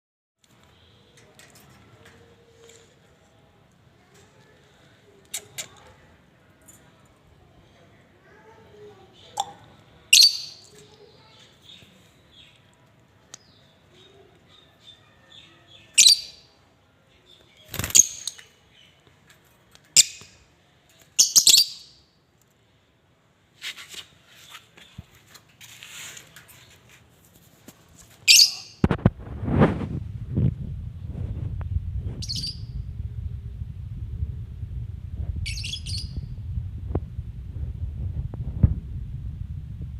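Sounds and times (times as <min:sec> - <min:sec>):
low noisy sound: 0:22.0 - 0:39.9.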